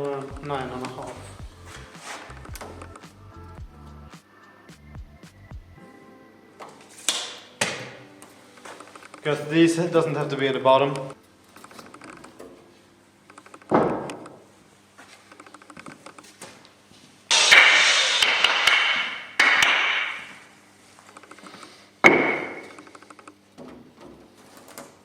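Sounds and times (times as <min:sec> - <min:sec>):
sharp knock: 0:17.3 - 0:20.3.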